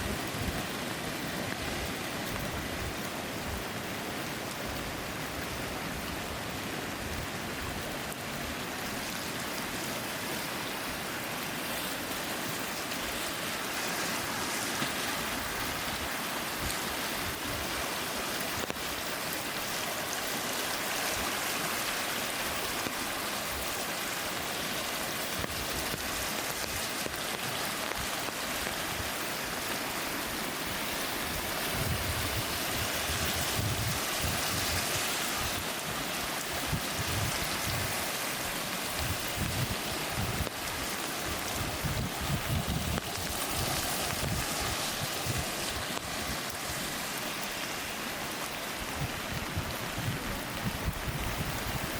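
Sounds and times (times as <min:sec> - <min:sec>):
flowing water rushing: 0:00.0 - 0:51.9.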